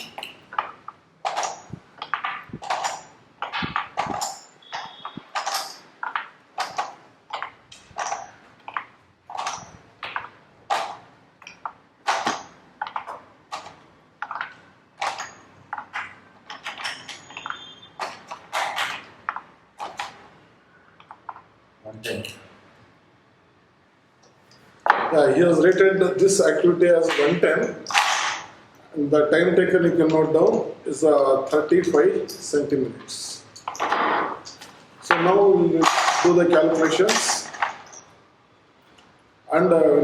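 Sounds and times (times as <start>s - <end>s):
pegs clicking into peg board: 0.0s - 20.2s.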